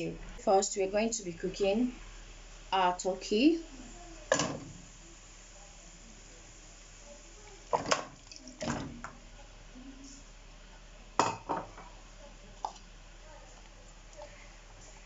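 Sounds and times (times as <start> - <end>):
meat knocking and splashing in pot: 4.3 - 4.8, 7.7 - 9.2.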